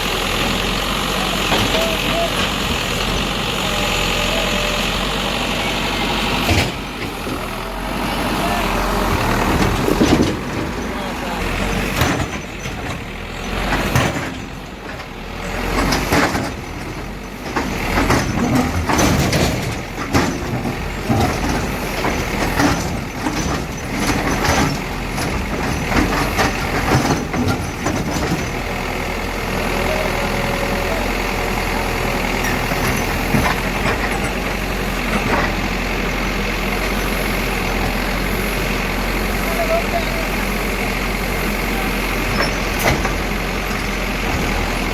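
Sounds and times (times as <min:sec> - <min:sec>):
diesel engine running: 0:00.0 - 0:44.9
machine clanks and knocks: 0:09.2 - 0:11.0, 0:11.7 - 0:28.7.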